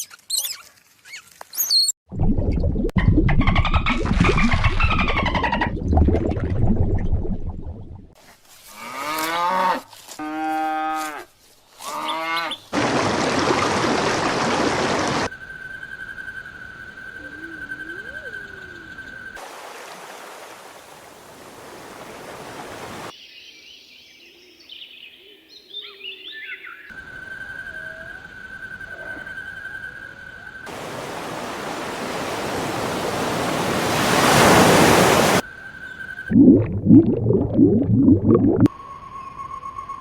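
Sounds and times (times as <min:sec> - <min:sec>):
loud steady hiss: 0:30.7 - 0:35.4.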